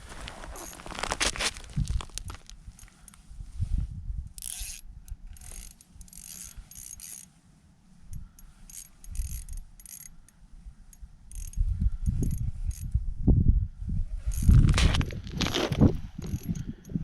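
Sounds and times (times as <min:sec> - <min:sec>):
low wind rumble on microphone: 0:00.0 - 0:05.6, 0:10.5 - 0:17.0
fishing reel cranking: 0:04.4 - 0:07.3, 0:08.1 - 0:10.2, 0:11.3 - 0:12.9.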